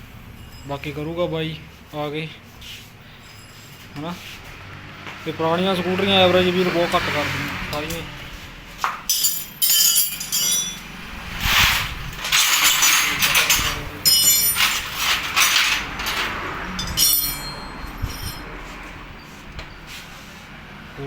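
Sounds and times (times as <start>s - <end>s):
metal tools clinking and rattling: 7.5s - 8.2s, 8.8s - 19.4s.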